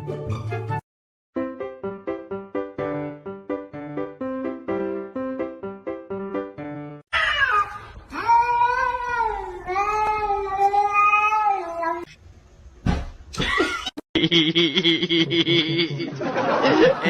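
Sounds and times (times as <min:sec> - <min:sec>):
piano music: 0:01.4 - 0:07.0
cat meowing: 0:07.2 - 0:12.1.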